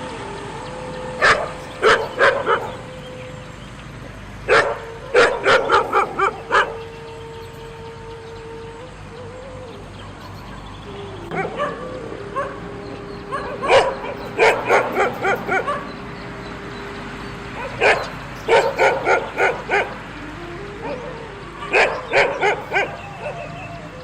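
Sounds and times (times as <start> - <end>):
dog yelping barks: 1.2 - 2.9, 4.5 - 7.0, 11.3 - 12.6, 13.3 - 16.0, 17.6 - 20.0, 20.8 - 23.7.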